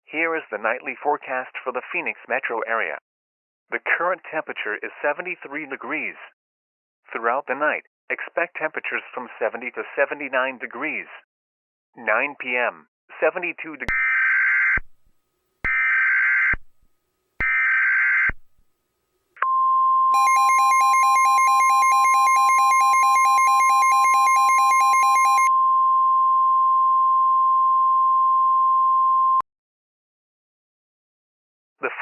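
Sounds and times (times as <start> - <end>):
steady alarm tone: 13.9 - 15.1, 15.7 - 16.8, 17.4 - 18.6, 20.1 - 25.5.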